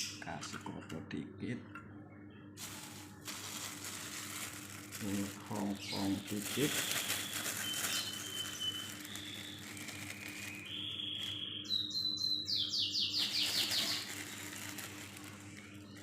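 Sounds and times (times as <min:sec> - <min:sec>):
small birds chirping: 0:05.0 - 0:16.0.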